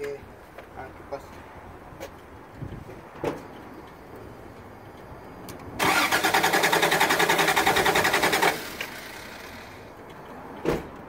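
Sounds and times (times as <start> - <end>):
starter cranking engine: 5.8 - 9.8.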